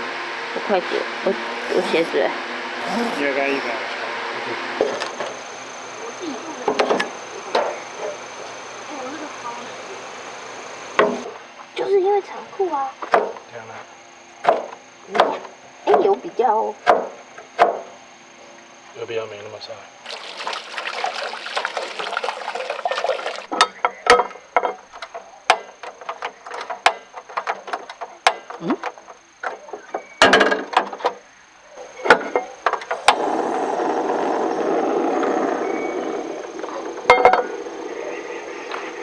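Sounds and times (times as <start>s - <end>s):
pouring water: 20.1s - 23.5s
rushing water: 20.1s - 23.5s.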